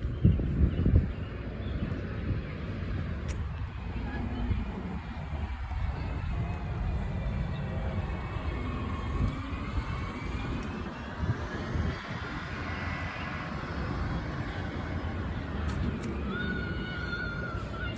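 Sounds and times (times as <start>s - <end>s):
distant engine rumble: 0.0s - 17.9s.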